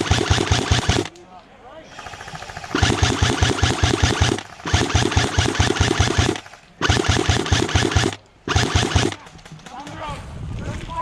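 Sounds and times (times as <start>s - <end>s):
airsoft gun firing full auto: 0.0s - 1.1s, 1.9s - 9.9s.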